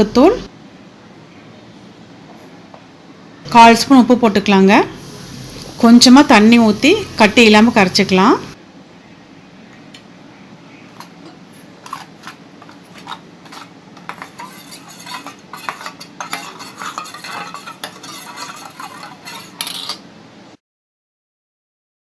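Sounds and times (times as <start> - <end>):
spoon stirring batter in a bowl: 11.0 - 20.0
spoon clinking and scraping bowl: 11.8 - 20.1.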